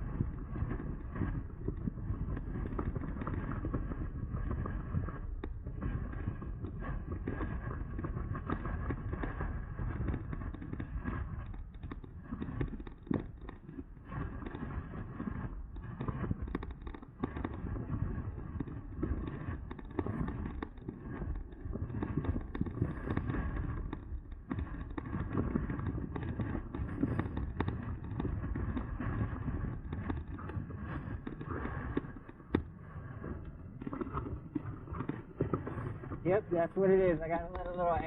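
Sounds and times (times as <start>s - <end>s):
wind rushing over microphone: 26.6s - 38.0s.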